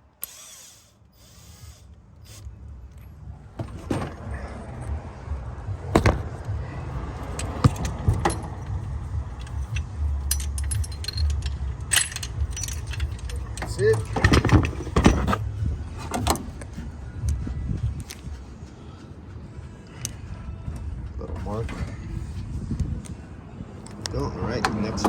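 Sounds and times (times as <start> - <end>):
steady low rumble: 0.0 - 25.0
metal tool clinking: 7.2 - 15.4.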